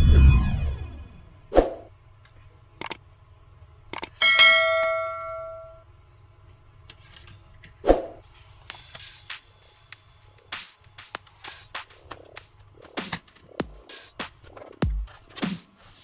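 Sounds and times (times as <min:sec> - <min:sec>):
metallic ding ringing: 0:04.2 - 0:05.8.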